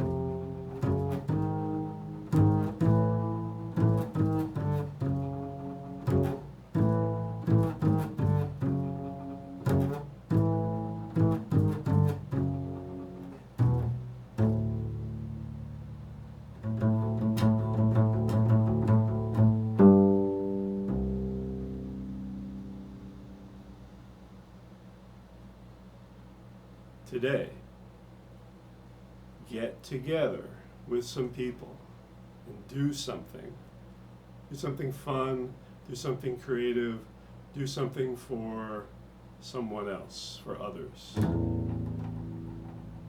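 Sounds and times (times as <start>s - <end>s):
low plucked string notes: 0.0s - 24.2s, 41.2s - 43.0s.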